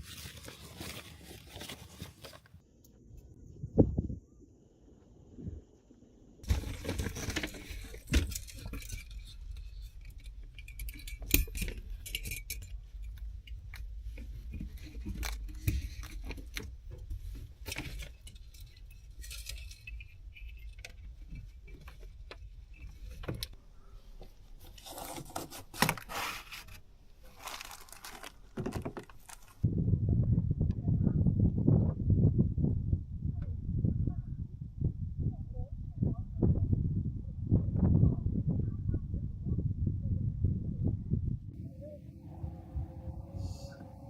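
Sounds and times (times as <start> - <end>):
metal and glass objects clinking: 6.6 - 13.7, 17.6 - 21.6
steady low rumble: 29.6 - 44.0.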